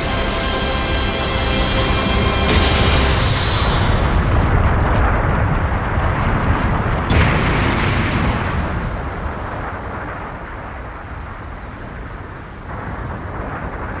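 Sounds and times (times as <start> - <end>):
explosion rumble: 2.1 - 14.0.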